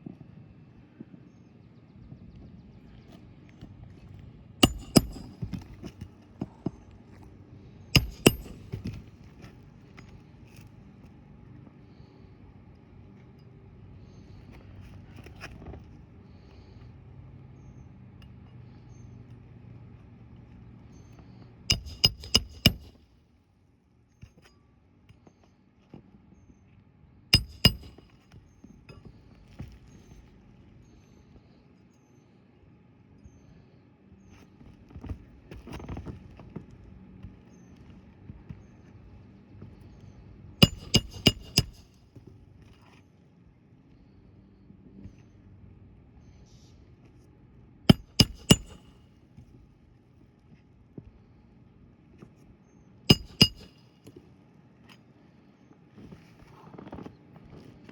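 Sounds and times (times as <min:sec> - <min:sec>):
hammer striking nail: 0:04.6 - 0:05.7, 0:08.0 - 0:09.0, 0:21.7 - 0:23.0, 0:27.4 - 0:28.1, 0:40.6 - 0:42.0, 0:47.9 - 0:49.0, 0:53.1 - 0:53.8
low steady hum: 0:04.6 - 0:06.0, 0:08.0 - 0:09.0.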